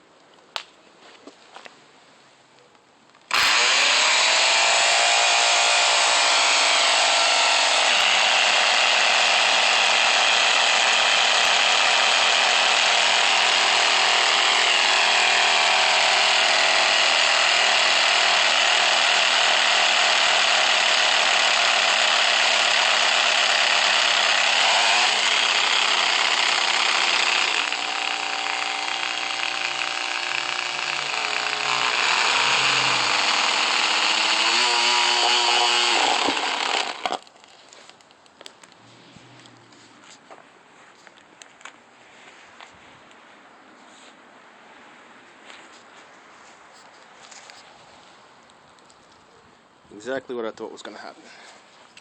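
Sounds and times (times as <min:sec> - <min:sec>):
angle grinder motor whine: 0:03.3 - 0:37.2.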